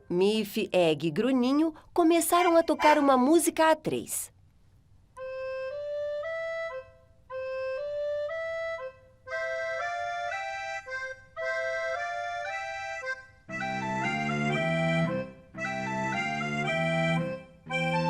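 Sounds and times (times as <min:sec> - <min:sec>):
reedy instrument playing tune: 0:05.2 - 0:18.0.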